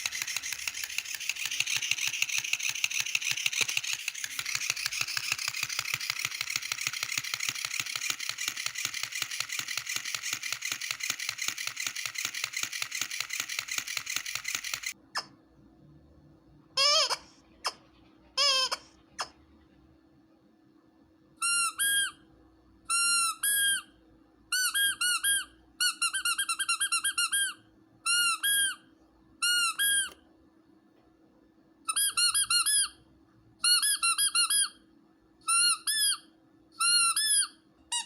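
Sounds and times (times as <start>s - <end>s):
dog toy rattling: 0.0s - 15.0s
squeaky dog toy: 16.8s - 19.4s, 21.4s - 30.2s, 31.8s - 38.0s.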